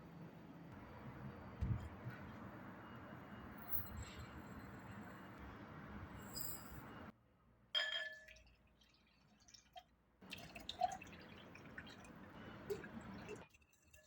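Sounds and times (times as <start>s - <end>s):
water dripping: 8.2s - 14.0s.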